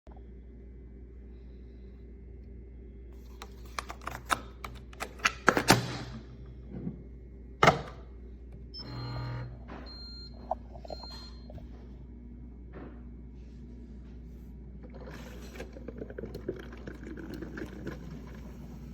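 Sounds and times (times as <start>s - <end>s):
low hum: 0.1s - 5.3s.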